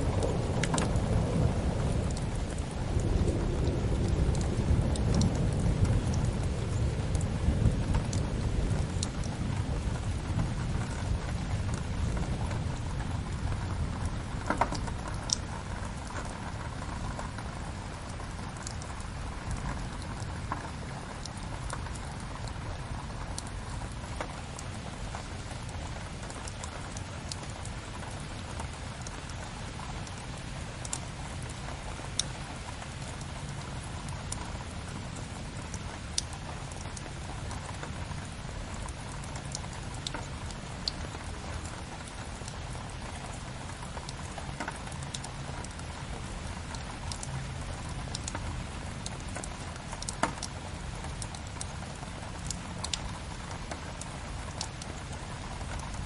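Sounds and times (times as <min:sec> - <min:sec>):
steady rain falling: 0:00.0 - 0:56.0
wood fire crackling: 0:35.2 - 0:48.5.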